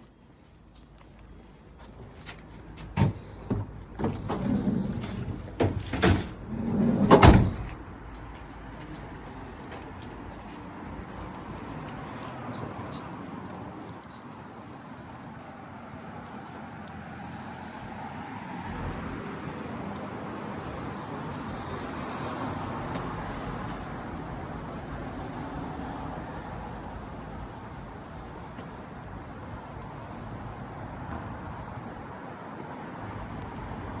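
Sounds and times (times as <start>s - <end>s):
car passing: 15.0s - 23.7s.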